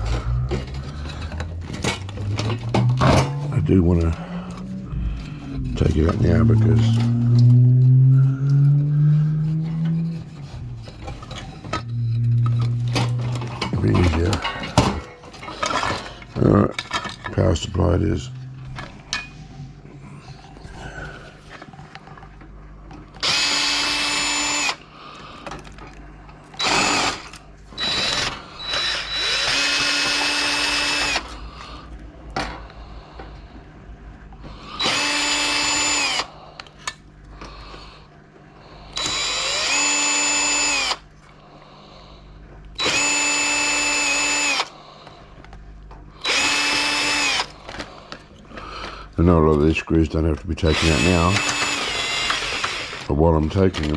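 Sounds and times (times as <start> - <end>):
power drill driving screws: 23.2 - 24.8, 26.6 - 31.3, 34.7 - 36.3, 39.0 - 41.0, 42.8 - 44.7, 46.2 - 47.6, 50.6 - 53.1.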